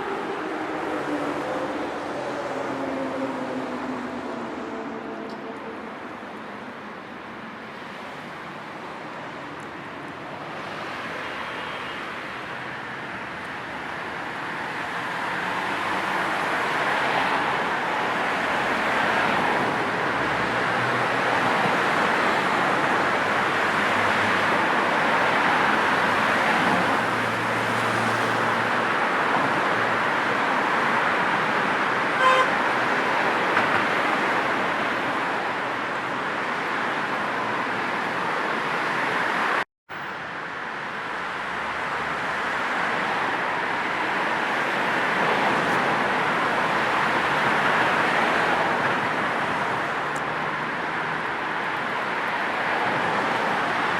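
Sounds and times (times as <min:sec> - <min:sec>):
passing vehicles: 0:00.0 - 0:53.9
car horn toot: 0:32.2 - 0:32.6.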